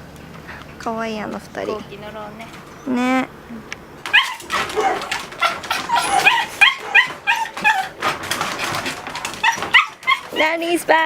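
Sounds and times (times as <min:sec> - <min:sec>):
dogs whining and yelping: 0:04.1 - 0:10.6
scuffling knocks: 0:04.1 - 0:10.6.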